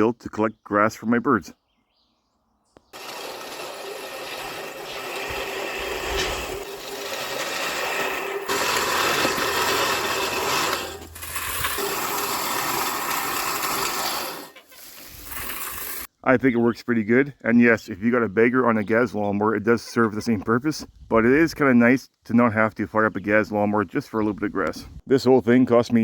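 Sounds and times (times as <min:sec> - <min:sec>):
lawn mower cutting grass: 0:02.9 - 0:16.1.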